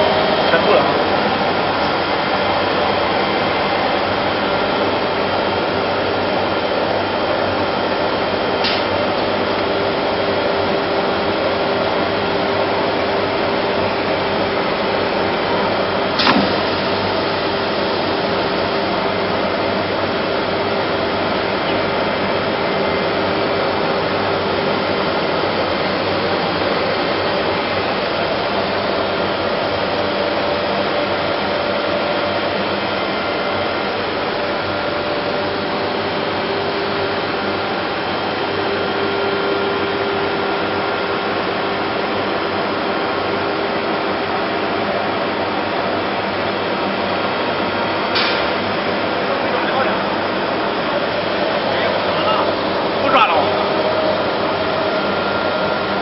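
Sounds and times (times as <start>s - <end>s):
router whirring and humming: 0.0s - 43.2s.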